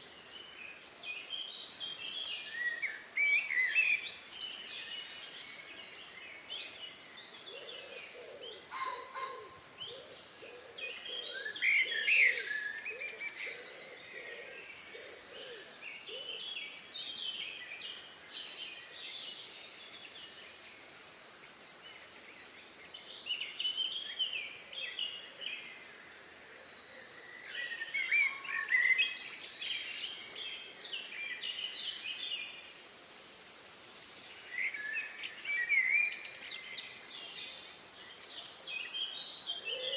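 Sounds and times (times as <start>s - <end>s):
songbirds chirping: 0.0s - 39.9s.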